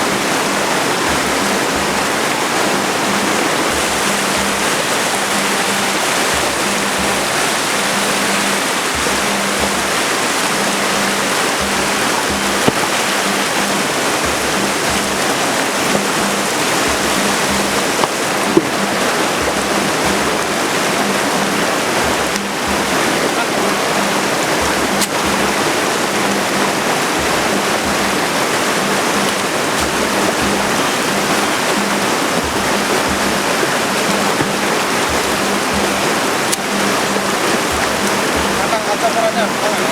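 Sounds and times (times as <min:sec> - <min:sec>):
river rushing over rocks: 0:00.0 - 0:39.9
sharp knocks: 0:08.2 - 0:21.1.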